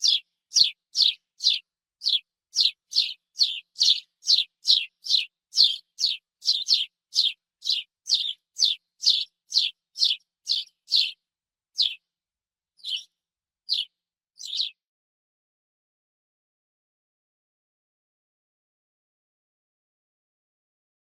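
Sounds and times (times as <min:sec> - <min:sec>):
sparrow chirping: 0:00.0 - 0:11.2, 0:11.8 - 0:12.1, 0:12.8 - 0:14.8.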